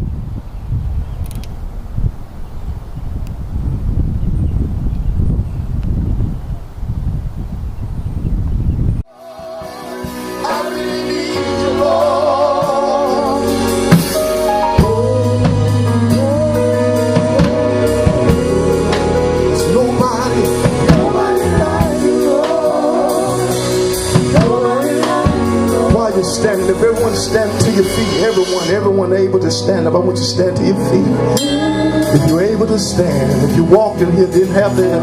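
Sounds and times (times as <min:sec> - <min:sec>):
held instrumental chords: 0:09.0 - 0:35.0
drum kit: 0:09.1 - 0:29.0, 0:31.4 - 0:35.0
singer with vibrato: 0:09.1 - 0:35.0.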